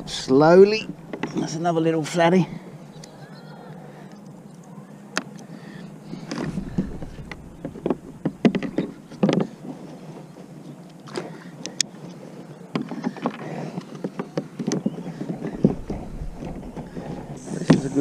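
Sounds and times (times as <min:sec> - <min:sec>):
low rumbling: 0:00.0 - 0:01.7, 0:05.8 - 0:09.6, 0:15.5 - 0:18.0
water movement: 0:00.0 - 0:18.0
fishing gear knocking and rattling: 0:06.2 - 0:09.6, 0:14.0 - 0:17.4.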